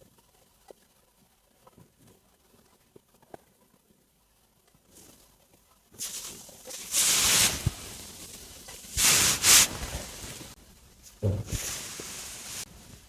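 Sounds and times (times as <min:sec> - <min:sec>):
stomach gurgling: 0:11.2 - 0:11.8.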